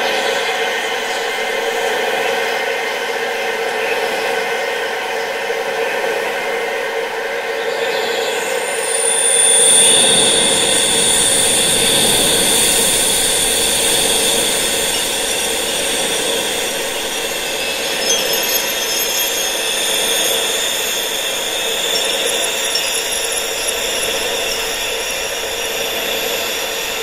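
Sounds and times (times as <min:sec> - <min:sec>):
high sustained tones: 0:07.5 - 0:27.0
wind rushing: 0:08.7 - 0:22.4.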